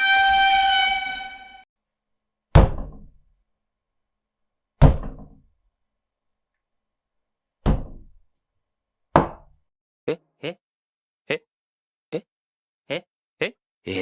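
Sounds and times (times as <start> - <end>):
horn-like tone: 0.0 - 1.6.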